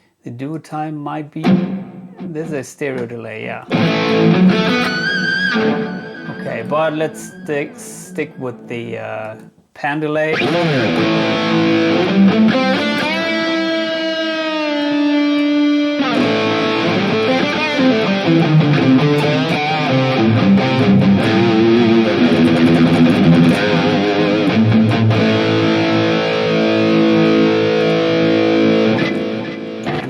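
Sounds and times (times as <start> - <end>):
electric guitar with stereo delay: 3.7 - 9.5, 10.3 - 30.0.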